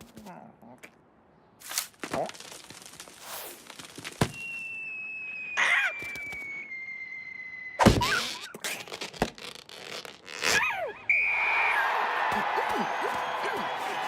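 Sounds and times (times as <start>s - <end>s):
descending whistling tone: 4.4s - 8.5s, 11.1s - 12.0s
cartoon loud hit: 7.8s - 8.4s
cartoon knock: 7.8s - 8.6s
squeaky character vocalisations: 8.0s - 8.6s.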